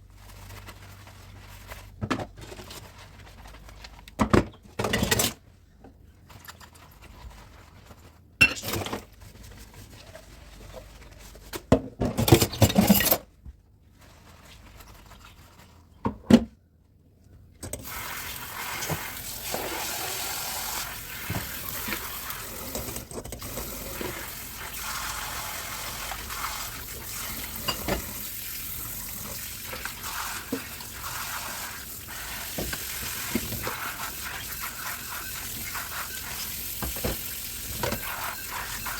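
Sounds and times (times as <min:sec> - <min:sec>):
water running into sink: 0:17.8 - 0:38.9
dishes clattering in sink: 0:26.0 - 0:28.3, 0:32.5 - 0:38.9.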